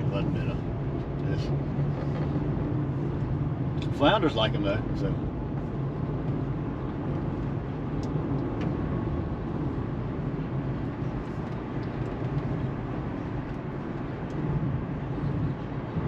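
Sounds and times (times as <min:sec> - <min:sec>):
vehicle engine and road rumble: 0:00.0 - 0:16.0.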